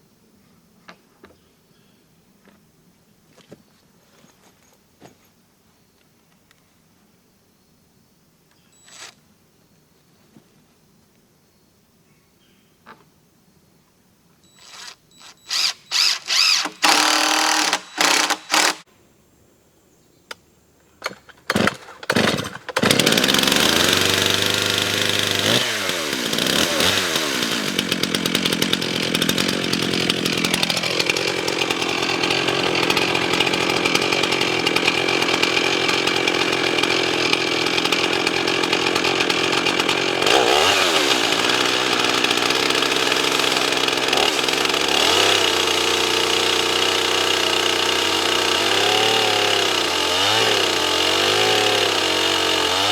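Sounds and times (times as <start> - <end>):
chainsaw cutting log: 8.8 - 9.2, 14.6 - 18.9, 21.0 - 52.9.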